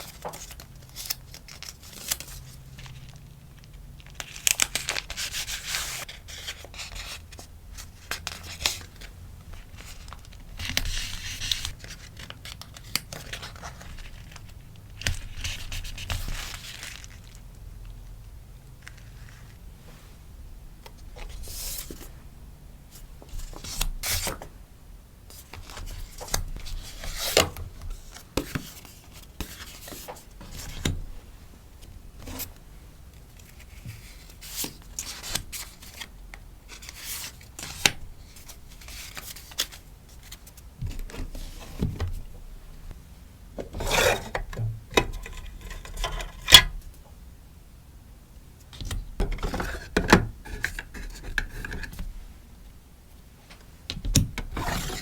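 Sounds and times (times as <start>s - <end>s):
plastic packaging rustling: 0.0s - 17.5s.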